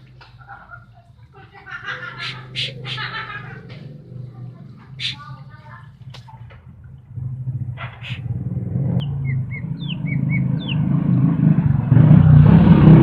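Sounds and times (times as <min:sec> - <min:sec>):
vehicle engine humming: 0:00.0 - 0:13.0
bird chirps: 0:02.0 - 0:05.4, 0:07.8 - 0:08.2, 0:09.0 - 0:10.9.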